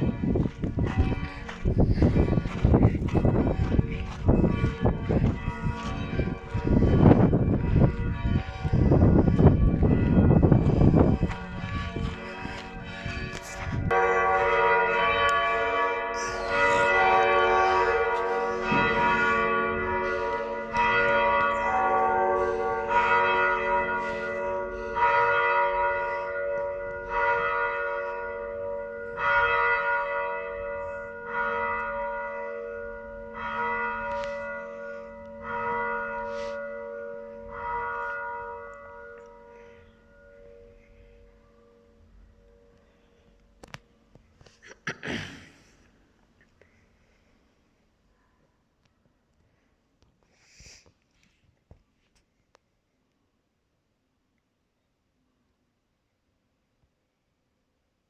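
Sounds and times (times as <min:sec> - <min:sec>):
church bells pealing: 0:00.0 - 0:43.4.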